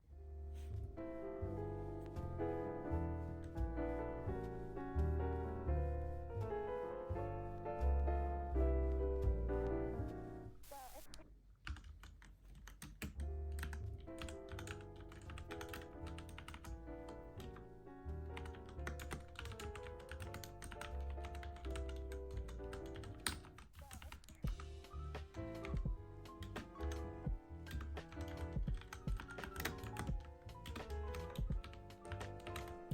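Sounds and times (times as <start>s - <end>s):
background music: 0.0s - 11.0s, 13.2s - 32.9s
mechanical keyboard typing: 11.6s - 17.6s, 18.4s - 24.6s, 25.5s - 32.9s.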